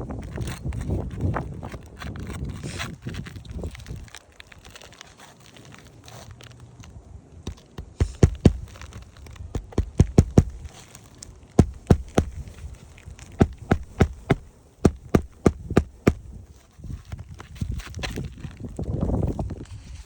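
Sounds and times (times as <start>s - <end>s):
hammer driving nails: 7.8s - 8.7s, 9.6s - 10.7s, 11.6s - 12.5s, 13.4s - 16.3s.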